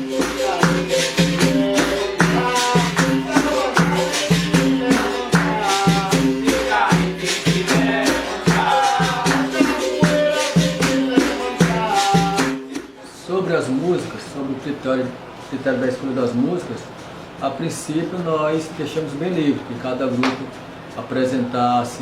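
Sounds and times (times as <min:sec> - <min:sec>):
berimbaus playing rhythm: 0:00.0 - 0:13.0
voices singing: 0:00.0 - 0:13.0
shaker rattles and percussion: 0:00.0 - 0:13.2.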